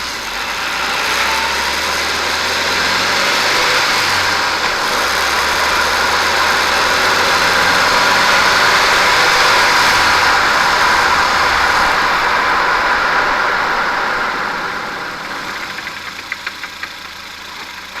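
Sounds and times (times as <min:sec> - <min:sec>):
car road and engine noise: 0:00.0 - 0:18.0
clicking under braking: 0:14.4 - 0:18.0.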